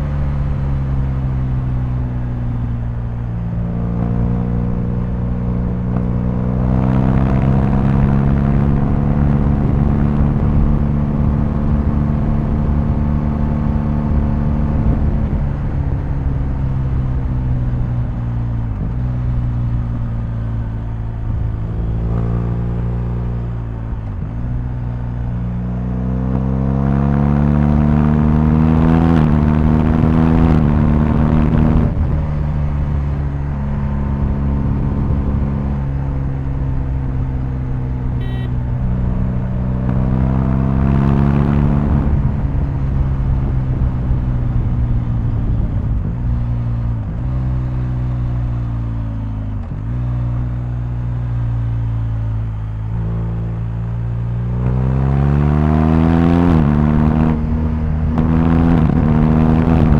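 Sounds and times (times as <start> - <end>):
motorcycle engine accelerating: 0.0 - 59.9.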